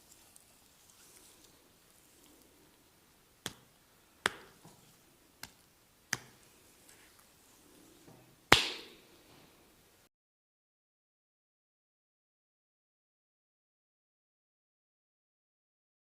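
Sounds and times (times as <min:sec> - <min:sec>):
percussive massage strikes: 0:03.4 - 0:04.7, 0:08.5 - 0:09.0.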